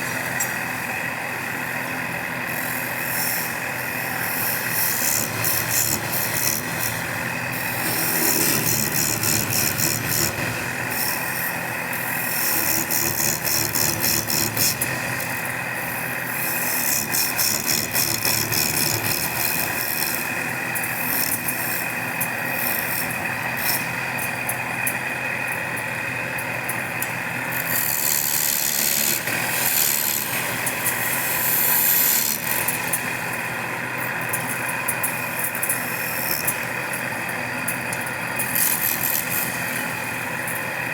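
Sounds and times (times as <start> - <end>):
power tool motor running: 0.0 - 24.5, 26.9 - 40.9
cutter scraping wood: 4.2 - 24.0, 27.4 - 33.1, 34.2 - 37.1, 37.8 - 40.0.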